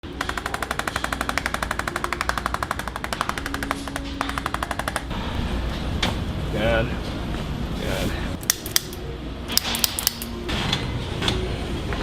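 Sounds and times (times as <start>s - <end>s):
rapid mechanical tapping: 0.0s - 5.1s.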